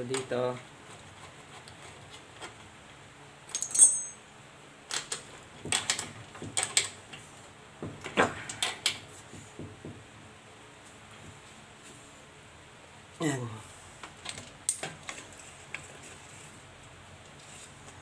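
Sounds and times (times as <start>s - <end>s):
high metallic ring: 3.5s - 4.3s
metal clinks and knocks: 3.5s - 4.3s.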